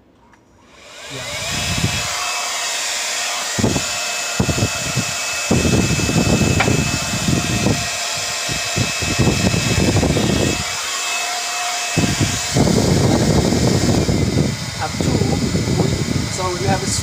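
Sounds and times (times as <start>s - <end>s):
hair dryer blowing: 0.7s - 17.0s
low rumbling gusts: 3.5s - 10.8s, 12.0s - 17.0s.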